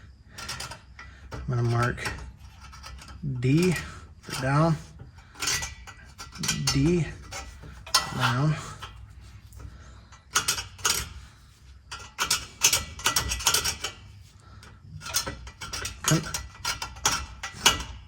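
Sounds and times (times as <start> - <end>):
metal hand tools clinking: 0.4 - 14.1, 14.9 - 18.0.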